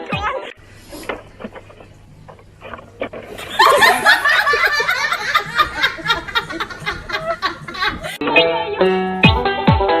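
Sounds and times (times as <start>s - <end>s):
loud laughter: 3.4s - 8.2s.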